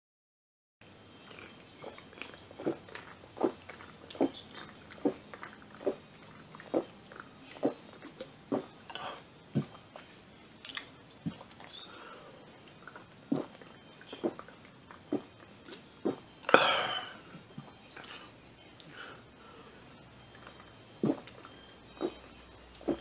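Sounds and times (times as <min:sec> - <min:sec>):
person gulping a drink: 0:12.8 - 0:17.2, 0:21.0 - 0:21.4.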